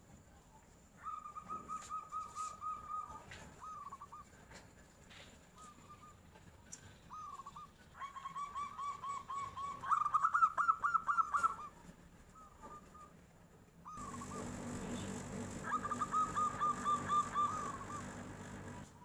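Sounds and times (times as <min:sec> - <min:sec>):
dove cooing: 0:13.9 - 0:18.9
background hiss: 0:14.0 - 0:19.0.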